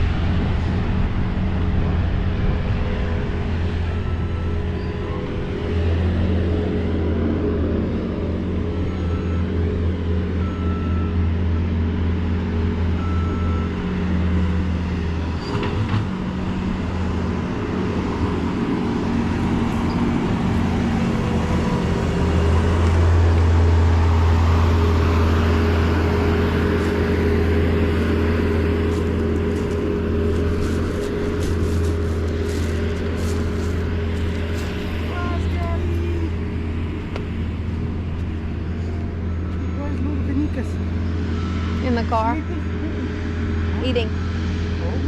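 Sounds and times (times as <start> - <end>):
heavy diesel engine under load: 0.0 - 45.0
reversing alarm beeps: 3.9 - 5.1, 8.6 - 11.4, 12.9 - 13.9, 39.1 - 42.6, 44.0 - 44.7.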